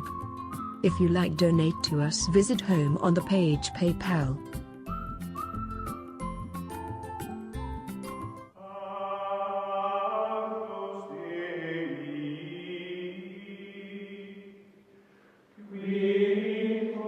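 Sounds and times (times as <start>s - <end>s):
choral voices holding chords: 8.5s - 14.8s, 15.6s - 17.0s.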